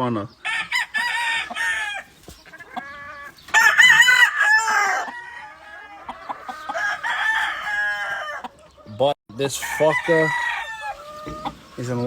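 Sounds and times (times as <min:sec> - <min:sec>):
distant rooster crows: 0:00.4 - 0:02.1, 0:02.7 - 0:08.5, 0:09.5 - 0:11.6
rooster crowing: 0:00.4 - 0:02.1, 0:02.9 - 0:08.5, 0:09.6 - 0:11.6.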